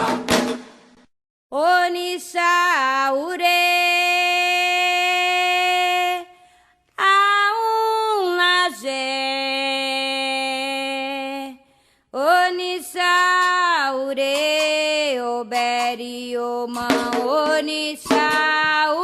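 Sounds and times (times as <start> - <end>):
drums: 0.0 - 1.1, 16.7 - 19.0
person singing unaccompanied: 7.0 - 11.6, 12.2 - 19.0.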